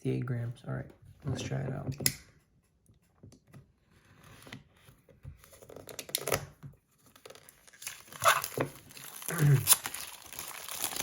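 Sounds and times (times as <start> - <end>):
packaging crinkling and tearing: 7.1 - 11.0.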